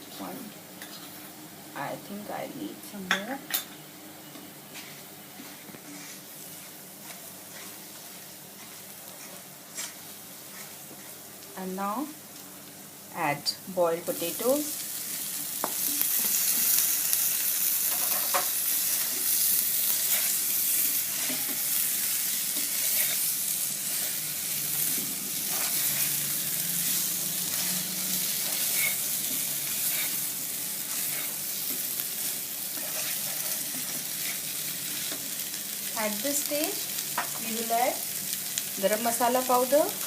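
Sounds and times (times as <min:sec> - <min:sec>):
potatoes sizzling in hot oil: 0:04.7 - 0:40.0
spoon scraping a wok: 0:17.8 - 0:19.3, 0:19.9 - 0:35.2.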